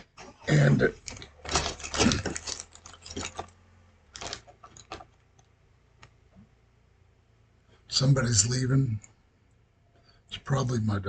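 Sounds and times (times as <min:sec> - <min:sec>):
low steady hum: 0:00.0 - 0:11.0
small hard objects rattling: 0:01.0 - 0:05.5.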